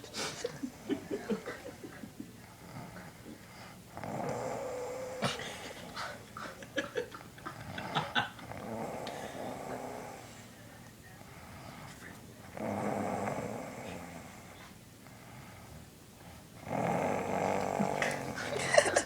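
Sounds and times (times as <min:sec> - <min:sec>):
person snoring: 0:16.6 - 0:19.0.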